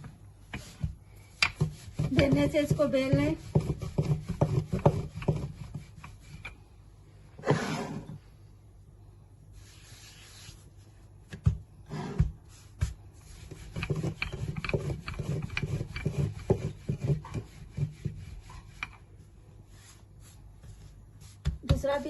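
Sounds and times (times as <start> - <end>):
rolling pin rubbing on dough: 0.0 - 6.7, 7.4 - 8.1, 11.8 - 22.0.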